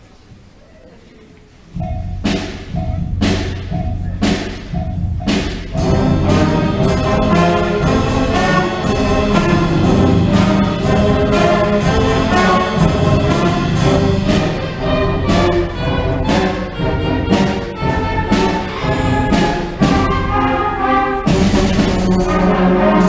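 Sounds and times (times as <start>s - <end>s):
drum hits: 1.7s - 23.0s
wind band playing: 5.2s - 23.0s.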